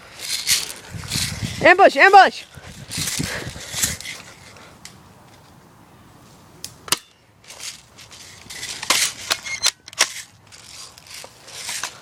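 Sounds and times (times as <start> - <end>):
rustling and crunching of brush: 7.4 - 12.0.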